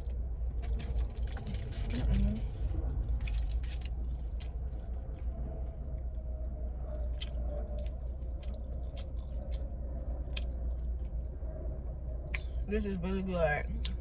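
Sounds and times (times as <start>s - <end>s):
low hum: 0.0s - 14.0s
person chewing food: 7.0s - 11.2s.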